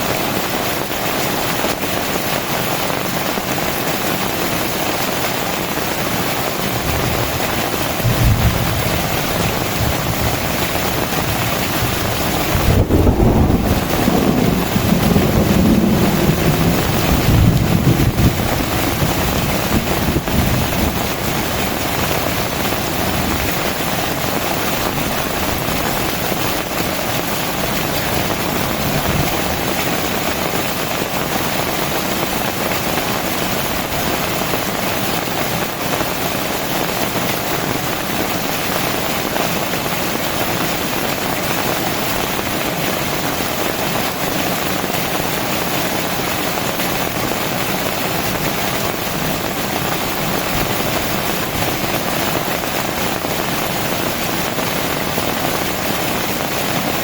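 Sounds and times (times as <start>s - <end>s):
heavy rain pouring: 0.0s - 57.0s.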